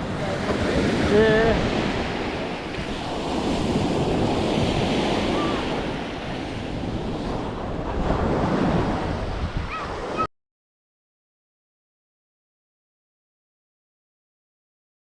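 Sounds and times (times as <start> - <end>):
sea waves washing ashore: 0.0 - 10.3
wind buffeting microphone: 0.0 - 10.3.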